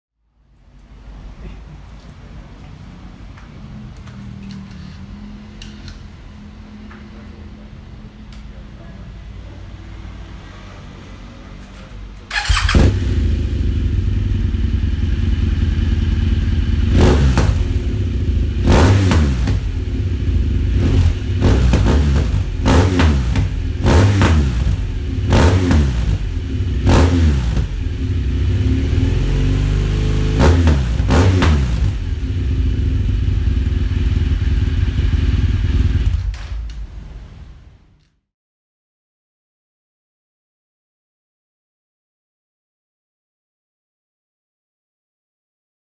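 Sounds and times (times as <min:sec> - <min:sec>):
motorcycle engine revving: 0:12.3 - 0:36.3.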